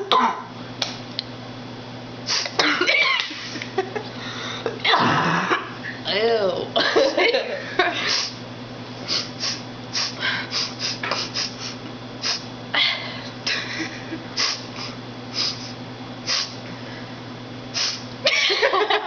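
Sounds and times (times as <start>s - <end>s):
person sniffing sharply: 2.3s - 2.6s, 8.1s - 8.4s, 9.0s - 12.5s, 14.4s - 16.6s, 17.7s - 18.0s
person laughing: 2.6s - 4.1s, 12.8s - 14.6s, 18.2s - 19.0s.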